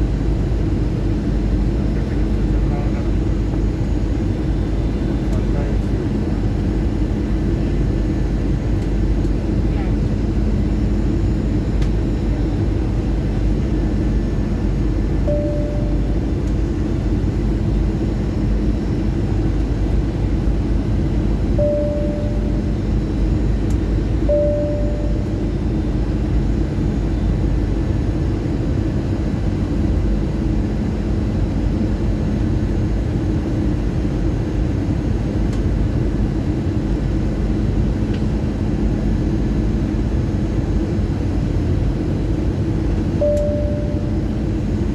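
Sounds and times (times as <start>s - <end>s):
airplane engine rumble: 0.0s - 44.9s
short beeps: 15.2s - 16.4s, 21.6s - 22.9s, 24.3s - 25.5s, 43.2s - 44.2s.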